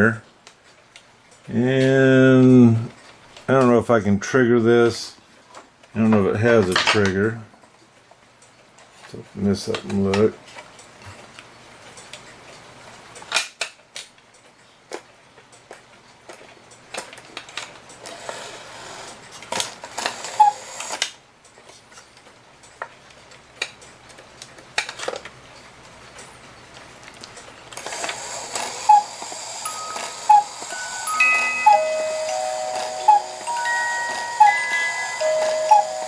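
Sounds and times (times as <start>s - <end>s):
music box whirr: 17.9s - 21.1s, 27.7s - 36.0s
music box plinked notes: 28.8s - 36.0s.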